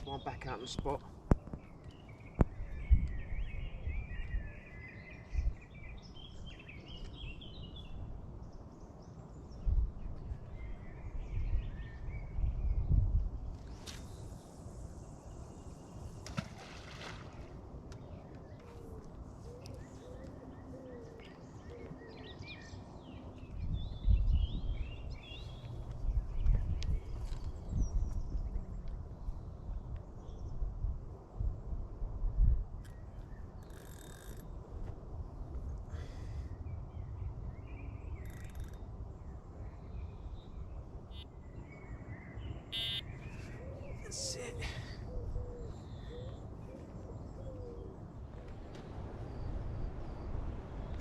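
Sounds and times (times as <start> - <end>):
faint birds chirping: 0.0 - 30.9, 32.8 - 51.0
wind rumble on microphone: 0.7 - 44.1, 45.0 - 51.0
small birds chirping: 35.4 - 48.0.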